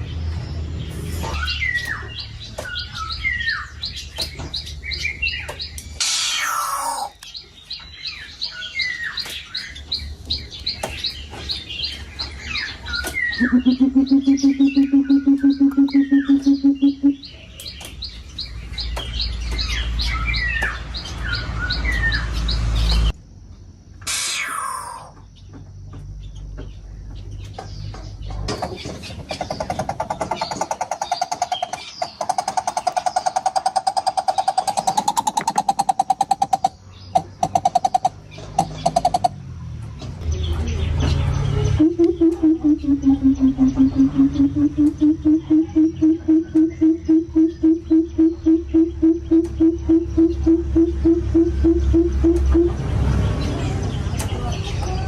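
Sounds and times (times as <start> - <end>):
birds chirping: 0.0 - 55.0
harsh falling bird squawk: 6.0 - 7.2, 13.2 - 17.3, 24.1 - 25.2
deep rapid pulsing bird call: 13.3 - 17.4, 41.8 - 52.8.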